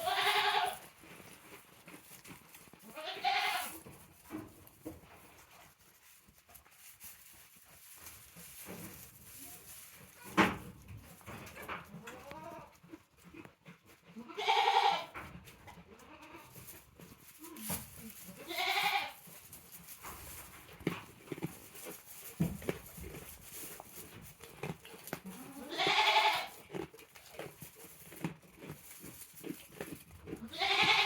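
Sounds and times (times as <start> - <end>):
goat bleating: 0.0 - 0.8, 2.8 - 3.9, 12.0 - 12.8, 14.2 - 15.2, 15.9 - 16.6, 17.5 - 19.3, 25.2 - 26.6, 30.4 - 31.0.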